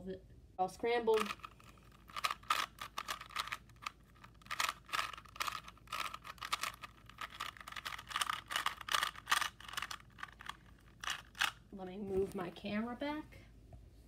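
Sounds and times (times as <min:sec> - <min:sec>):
puzzle cube clicking and rattling: 0:01.1 - 0:11.7.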